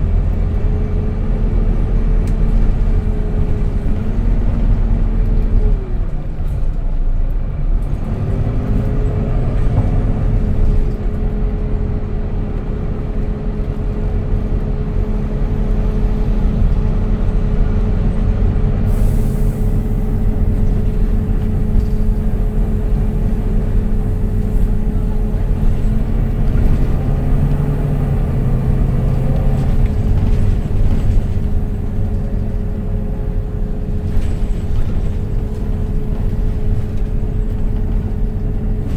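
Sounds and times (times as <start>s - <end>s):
bus engine rumbling: 0.0s - 38.9s.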